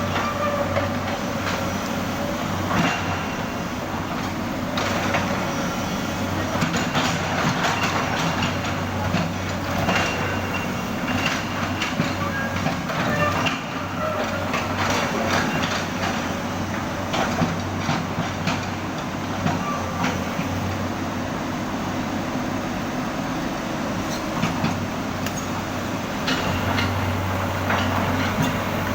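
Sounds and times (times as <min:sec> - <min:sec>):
excavator engine humming: 0:00.0 - 0:28.9.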